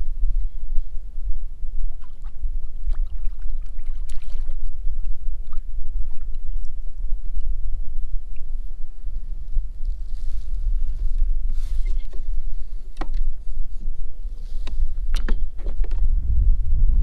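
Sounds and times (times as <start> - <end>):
wind rumbling on microphone: 0.0 - 17.0
small water splashes and drips: 2.0 - 6.7.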